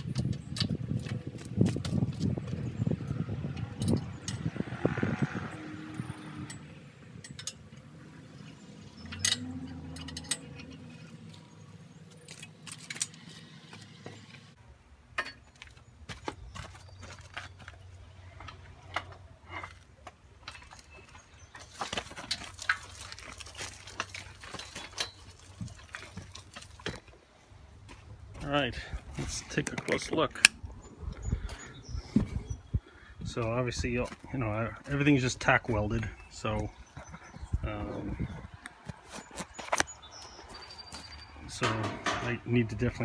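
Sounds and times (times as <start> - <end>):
metal tools clinking: 0.0 - 4.6, 6.3 - 14.0, 20.4 - 27.0, 39.2 - 42.6.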